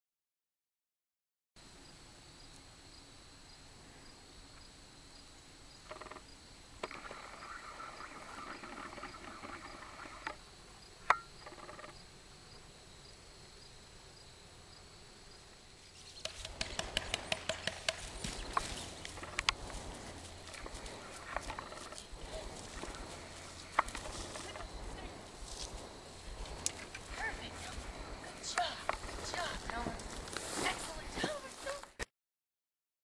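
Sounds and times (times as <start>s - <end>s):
sharp clicks: 16.2s - 19.6s, 26.6s - 27.2s.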